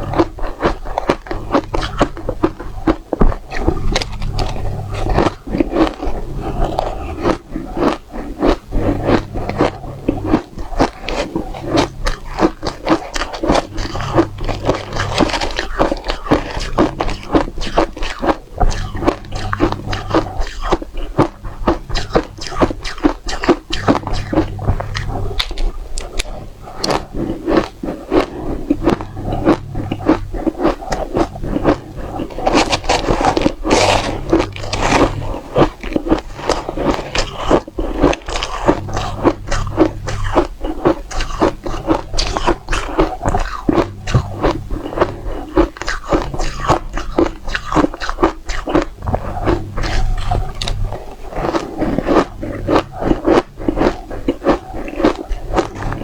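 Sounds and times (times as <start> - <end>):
ice being chewed and crunched: 0.0 - 56.0.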